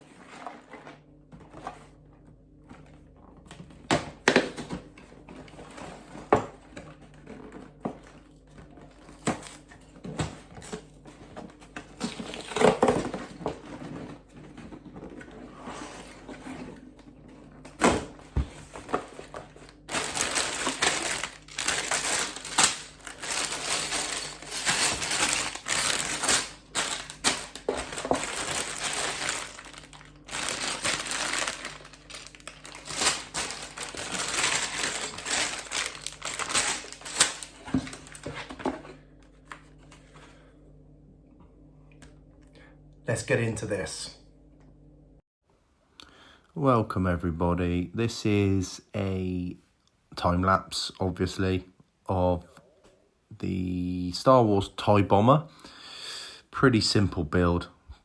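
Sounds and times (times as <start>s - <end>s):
plastic crinkling rustle: 18.7s - 38.6s.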